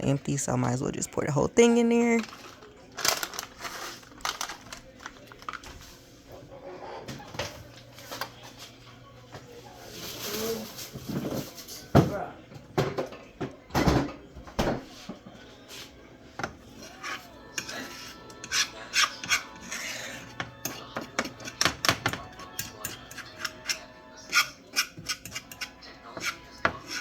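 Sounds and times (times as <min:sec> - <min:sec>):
utensil scraping and knocking skillet: 0:16.4 - 0:27.0.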